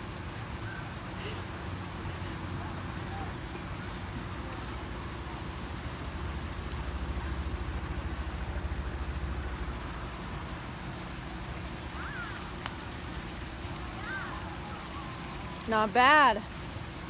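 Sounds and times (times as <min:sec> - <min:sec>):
outdoor hiss: 0:00.0 - 0:17.0
pulsing low rumble: 0:04.4 - 0:11.8.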